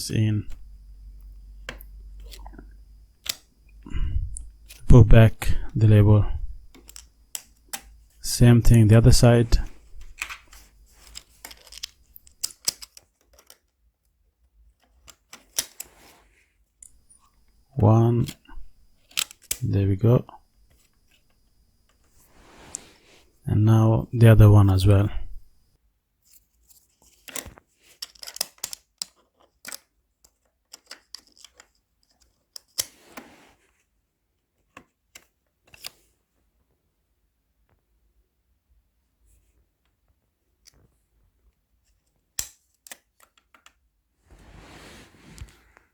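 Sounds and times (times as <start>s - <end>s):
small clicks and scrapes: 1.6s - 4.9s, 6.5s - 8.2s, 9.6s - 17.6s, 18.2s - 19.6s, 26.2s - 33.8s, 34.6s - 36.1s.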